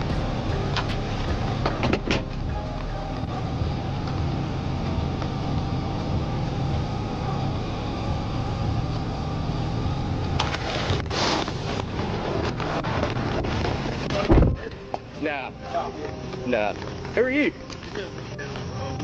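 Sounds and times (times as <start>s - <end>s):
vehicle motor rumble: 0.0s - 19.0s.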